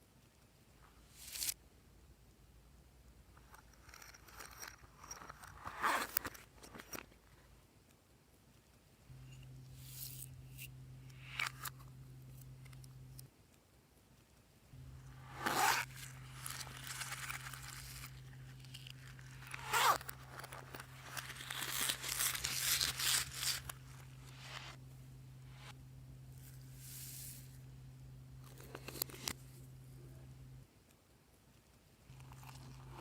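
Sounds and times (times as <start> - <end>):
steady low hum: 9.1 - 13.3, 14.7 - 30.7
slime tearing and crinkling: 16.0 - 23.7.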